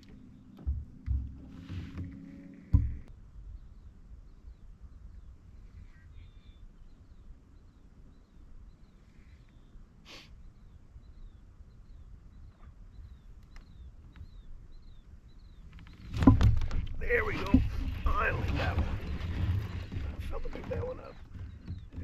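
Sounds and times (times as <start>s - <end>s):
wind rumble on microphone: 0.0s - 9.1s, 10.5s - 22.0s
bird chirping: 0.0s - 22.0s
short hiss: 10.0s - 10.4s.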